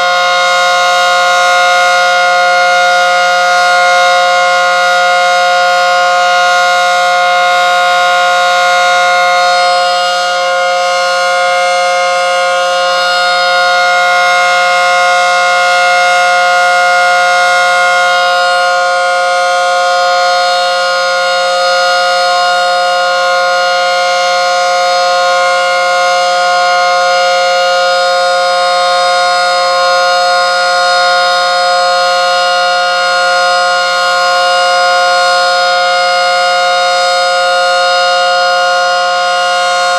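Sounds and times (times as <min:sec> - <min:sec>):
outdoor warning siren: 0:00.0 - 0:39.9.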